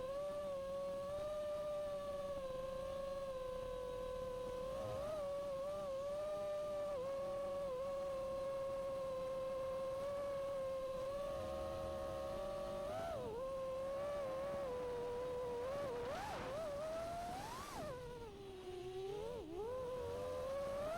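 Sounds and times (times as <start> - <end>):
drone motors whining: 8.1 - 20.9.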